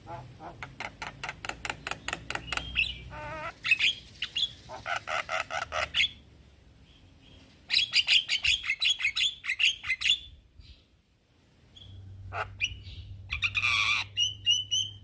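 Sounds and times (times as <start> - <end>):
myna chattering calls: 0.0 - 6.2.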